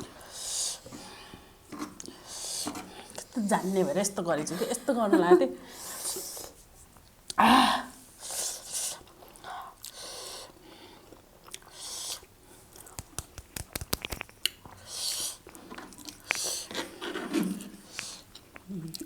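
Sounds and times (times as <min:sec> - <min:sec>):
person chewing noodles: 0:09.0 - 0:17.0, 0:17.6 - 0:19.0
wet mouth clicks: 0:11.5 - 0:16.5.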